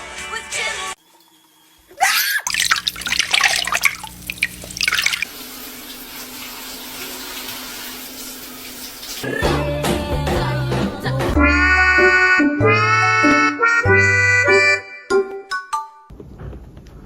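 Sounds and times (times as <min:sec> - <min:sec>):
water splashing: 0:02.0 - 0:05.4
water running from a tap: 0:02.0 - 0:09.2.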